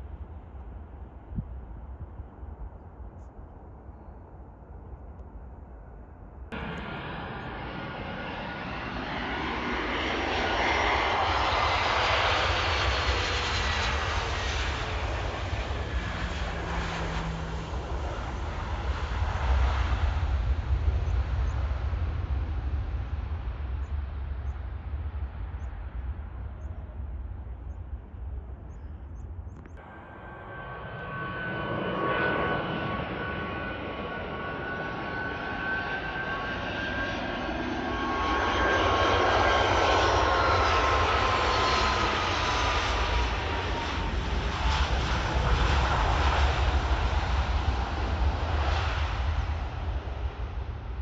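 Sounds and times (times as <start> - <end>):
low rumble: 3.8 - 10.4
high engine whine: 6.5 - 22.2, 29.5 - 51.0
jet airliner passing: 6.5 - 51.0.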